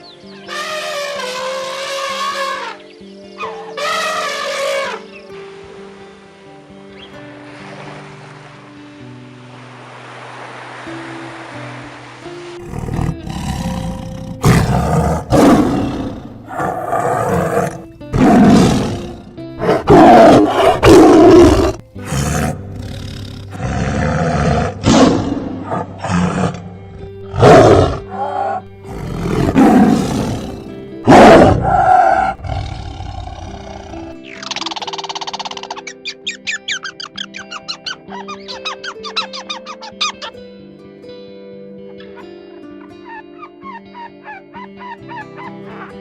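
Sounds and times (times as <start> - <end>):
background music: 0.0 - 46.0
large animal roaring: 12.6 - 34.2.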